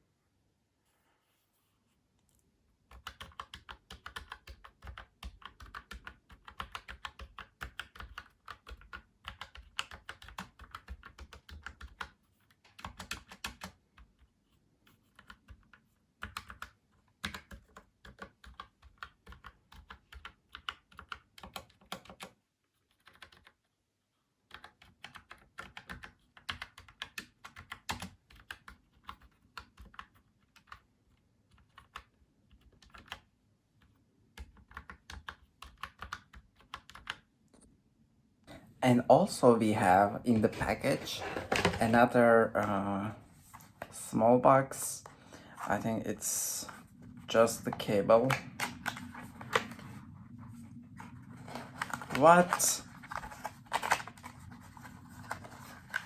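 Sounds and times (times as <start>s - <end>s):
mechanical keyboard typing: 2.9s - 14.3s, 15.1s - 23.6s, 24.5s - 30.9s, 31.5s - 33.3s, 34.4s - 37.3s, 51.6s - 54.3s.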